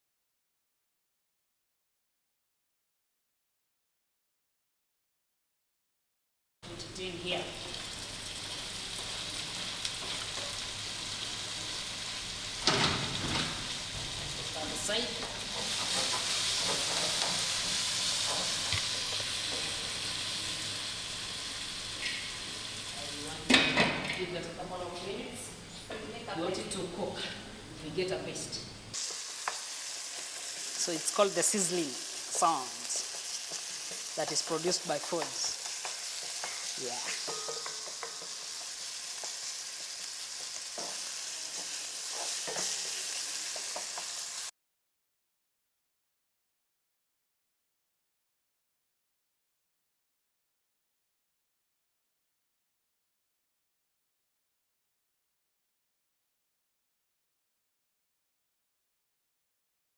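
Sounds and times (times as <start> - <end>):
food sizzling in hot oil: 6.8 - 23.5, 28.9 - 44.5.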